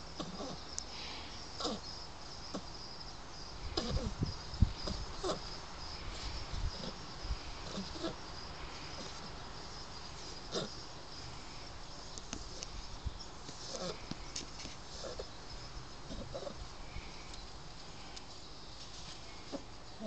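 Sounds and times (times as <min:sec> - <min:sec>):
puppy snoring and snuffling: 0:00.2 - 0:00.6, 0:01.6 - 0:01.8, 0:03.7 - 0:04.2, 0:06.2 - 0:08.2, 0:10.5 - 0:10.8, 0:13.6 - 0:14.0, 0:14.9 - 0:15.3, 0:16.1 - 0:16.6.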